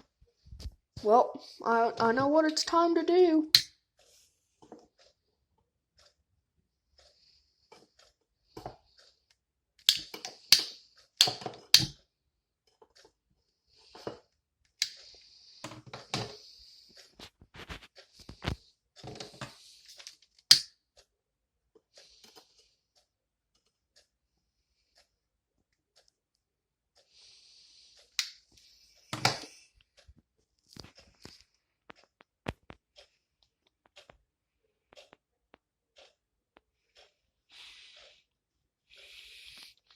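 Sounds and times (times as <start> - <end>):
sharp clicks and knocks of handling: 9.8 - 12.0, 14.0 - 16.4.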